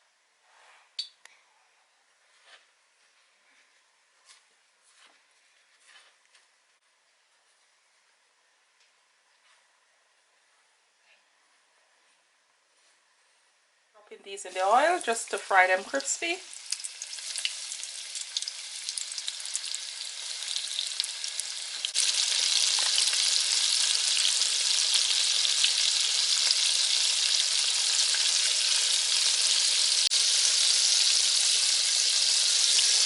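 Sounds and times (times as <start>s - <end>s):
food sizzling in hot oil: 14.4s - 33.0s.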